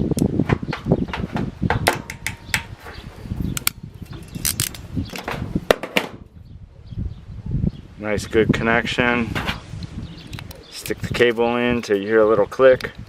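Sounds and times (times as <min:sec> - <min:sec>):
tools clicking and knocking: 0:01.8 - 0:02.9, 0:03.6 - 0:05.4.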